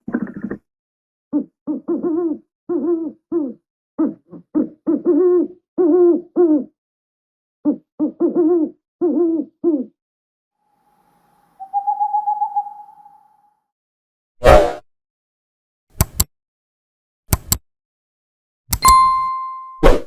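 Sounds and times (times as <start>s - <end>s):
owl hooting: 11.6s - 13.5s.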